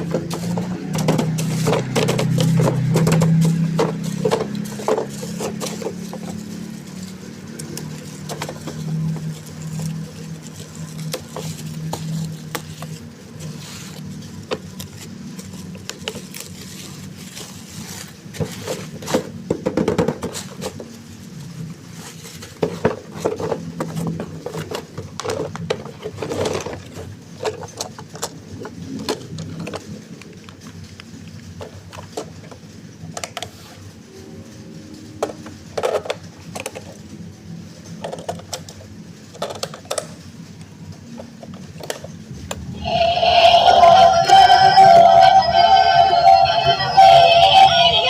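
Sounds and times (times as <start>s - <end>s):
plastic clicks and rattles: 37.9s - 42.6s
toy motor humming: 42.8s - 48.0s.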